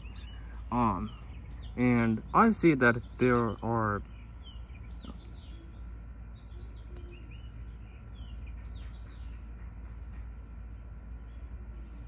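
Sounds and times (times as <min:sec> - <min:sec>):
low background rumble: 0:00.0 - 0:12.0
small birds chirping: 0:00.0 - 0:12.0.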